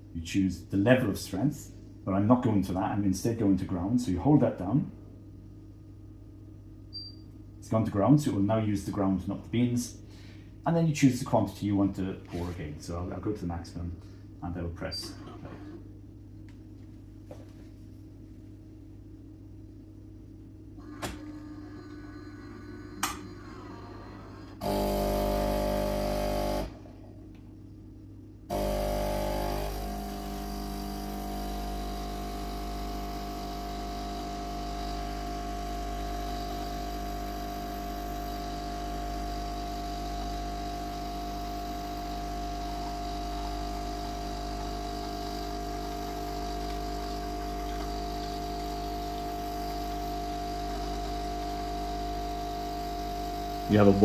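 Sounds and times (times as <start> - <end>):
coffee machine pump humming: 20.8 - 27.0, 28.5 - 54.0.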